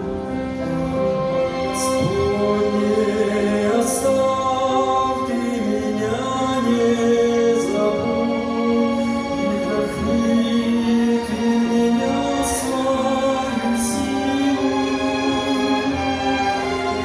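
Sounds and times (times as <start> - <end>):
choir singing long held notes: 0.0 - 17.0.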